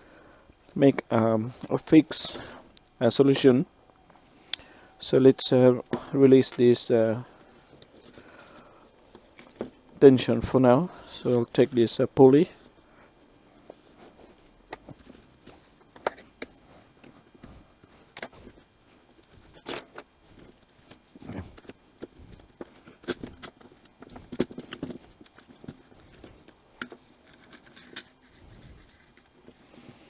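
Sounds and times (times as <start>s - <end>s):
small parts clicking and knocking: 19.2s - 29.6s.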